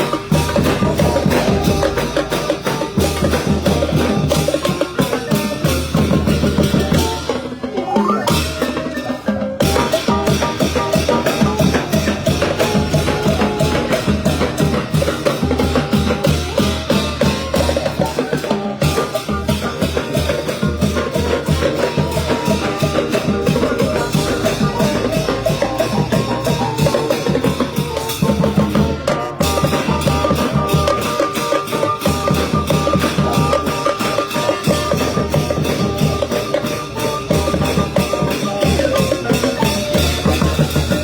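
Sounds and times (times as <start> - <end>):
brass band melody: 0.0 - 41.0
driving drum beat: 0.0 - 41.0.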